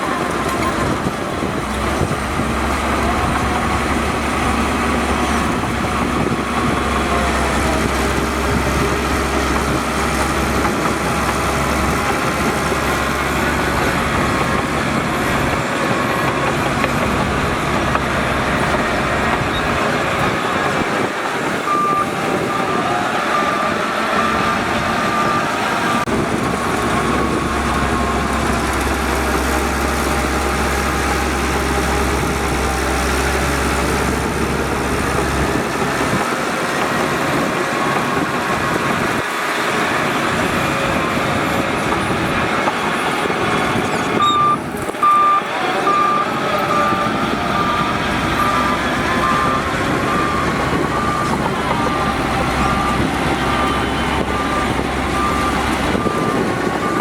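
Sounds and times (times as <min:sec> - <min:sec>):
bulldozer diesel engine running: 0:00.0 - 0:57.0
reversing alarm beeping: 0:18.6 - 0:41.1, 0:42.0 - 0:57.0.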